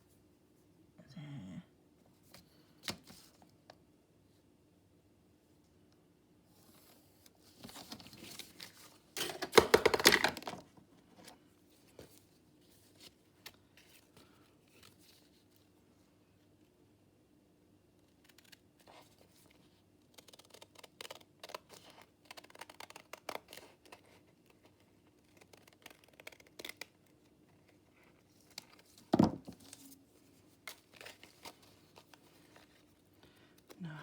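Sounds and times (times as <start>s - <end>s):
paper crackling and rustling: 20.2s - 33.8s.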